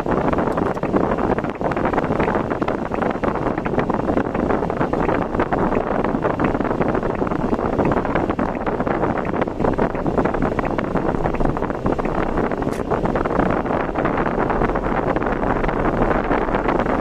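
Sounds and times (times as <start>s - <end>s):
vehicle and road noise: 0.0s - 17.0s
wind buffeting microphone: 0.0s - 17.0s.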